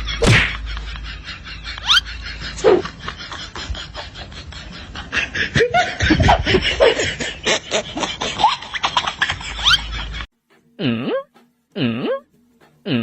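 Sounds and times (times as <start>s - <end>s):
people laughing: 0.0s - 10.3s.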